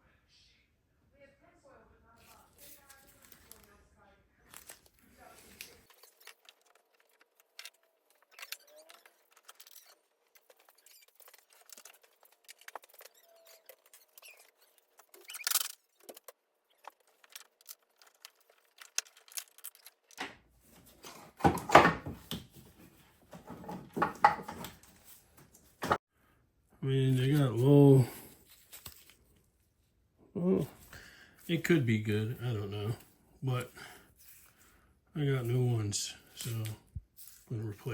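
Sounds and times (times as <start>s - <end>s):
metal parts rattling: 16.9s - 20.2s.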